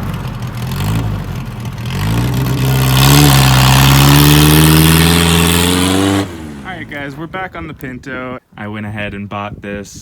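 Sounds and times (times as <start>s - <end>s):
car engine revving: 0.0s - 7.3s.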